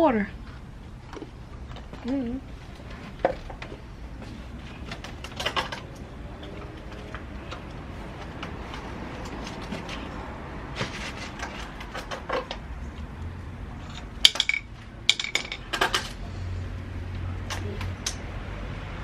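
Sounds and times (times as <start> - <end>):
metal tools clinking: 13.8 - 16.2.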